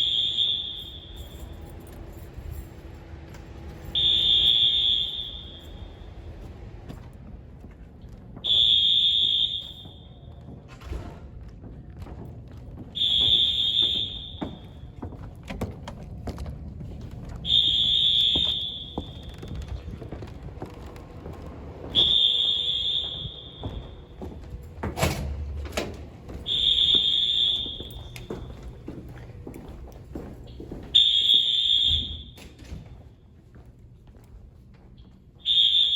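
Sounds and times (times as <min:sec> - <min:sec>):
fire alarm horn blasts: 0:00.0 - 0:02.6, 0:03.5 - 0:06.4, 0:08.4 - 0:10.4, 0:12.9 - 0:15.0, 0:17.4 - 0:19.6, 0:21.8 - 0:24.5, 0:26.3 - 0:28.6, 0:30.9 - 0:32.9, 0:35.4 - 0:35.9.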